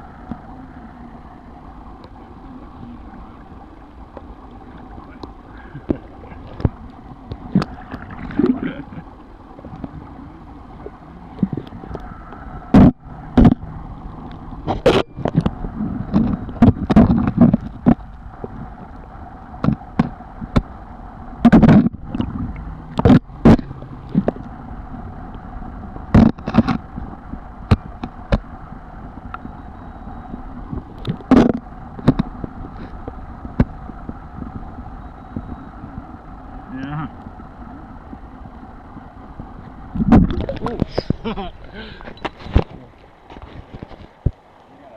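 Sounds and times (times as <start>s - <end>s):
river water rushing: 0.0s - 44.9s
sharp knocks and thumps: 12.7s - 13.6s.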